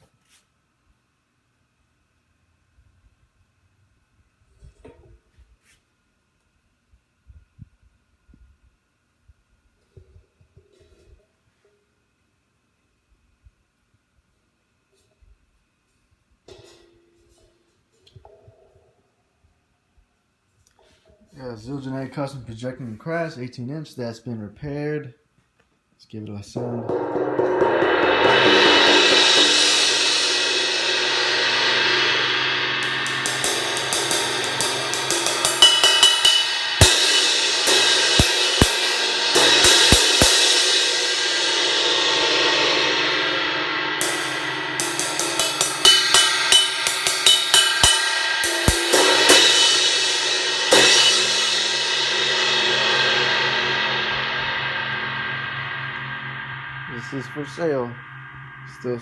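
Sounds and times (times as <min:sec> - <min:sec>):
crash cymbal ringing: 0:26.6 - 0:59.0.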